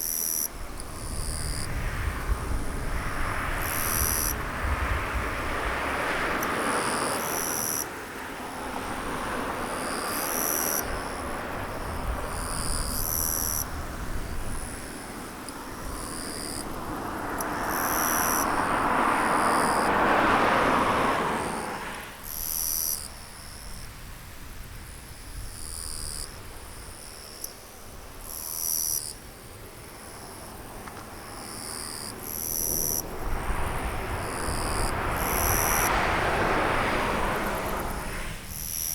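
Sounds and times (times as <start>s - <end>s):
rushing noise: 32.0s - 38.9s.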